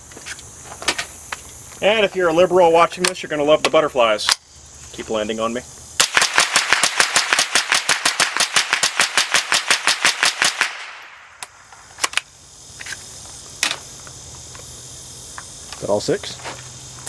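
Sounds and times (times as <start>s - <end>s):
suppressed rifle firing rapidly: 6.0s - 10.9s.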